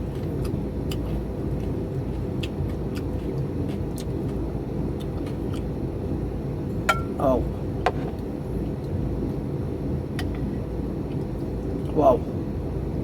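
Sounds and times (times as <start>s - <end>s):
chewing with wet mouth clicks: 0.1s - 5.7s.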